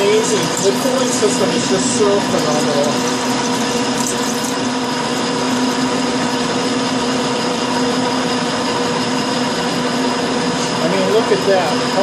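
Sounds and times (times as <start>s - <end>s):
metal lathe whine: 0.0s - 12.0s.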